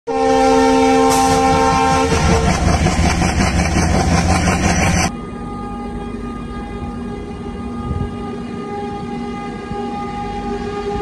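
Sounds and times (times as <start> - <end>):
locomotive air horn blast: 0.1 - 2.8, 5.0 - 11.0
train rumbling and clattering past: 0.9 - 5.4.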